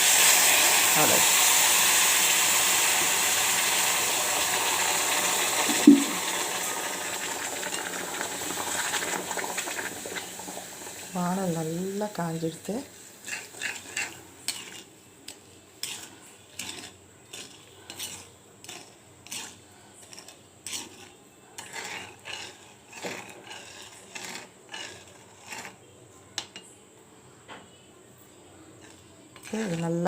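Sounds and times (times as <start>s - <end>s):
spoon scraping sugar in a pan: 4.8s - 26.7s, 28.6s - 30.0s.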